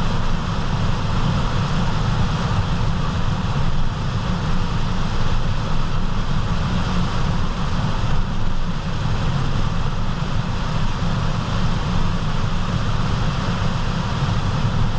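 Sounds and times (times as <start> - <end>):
road roar in car cabin: 0.0 - 14.9.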